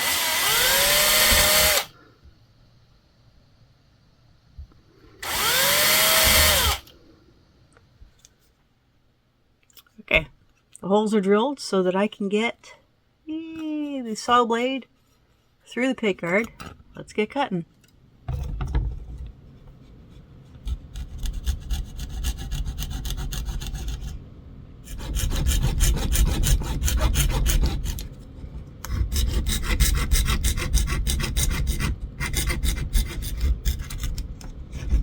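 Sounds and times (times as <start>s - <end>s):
coping saw rasping: 0.0s - 1.9s, 5.2s - 6.8s, 24.9s - 28.1s, 28.8s - 35.0s.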